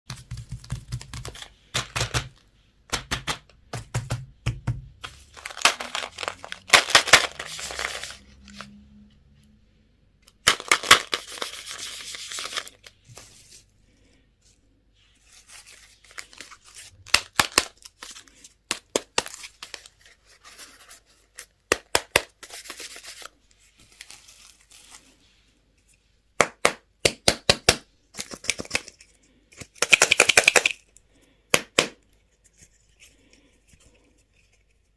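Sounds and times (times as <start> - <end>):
plastic wrappers crinkling: 5.0 - 8.7.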